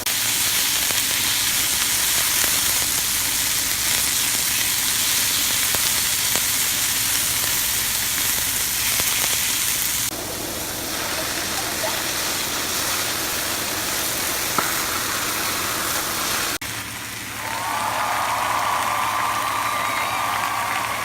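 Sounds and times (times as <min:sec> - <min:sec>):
food sizzling in a frying pan: 0:00.0 - 0:21.0.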